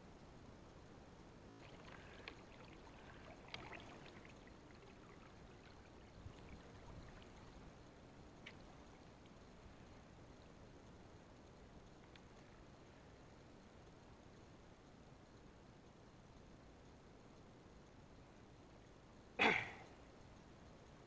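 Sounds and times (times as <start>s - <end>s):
water trickling: 1.4s - 14.4s
small water splashes: 1.6s - 7.8s
light clicks: 11.4s - 12.7s.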